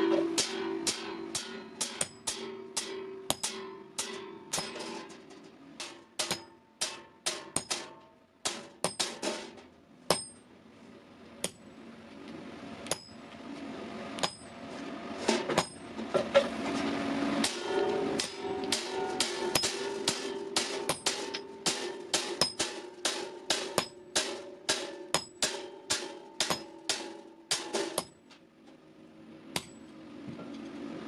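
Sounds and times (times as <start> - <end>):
hammer on steel anvil ringing: 0.0 - 4.9, 5.8 - 9.2, 10.1 - 10.4, 17.4 - 28.2.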